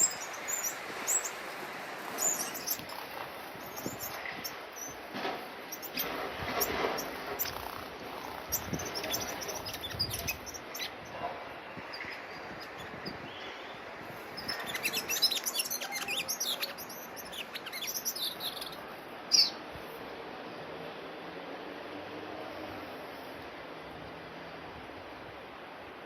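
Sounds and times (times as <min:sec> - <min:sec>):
bird high twittering song: 0:00.0 - 0:05.0, 0:05.7 - 0:19.6.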